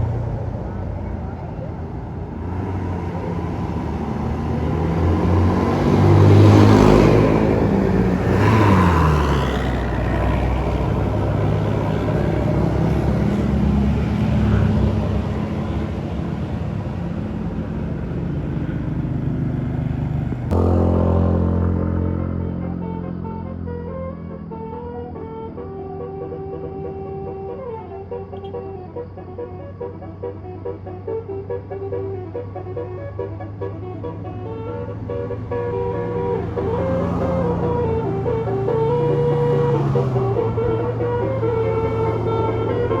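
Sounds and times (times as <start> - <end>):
vehicle engines climbing a hill: 0.0 - 43.0
vehicles passing close: 0.0 - 43.0
loud steady sound: 20.5 - 27.3.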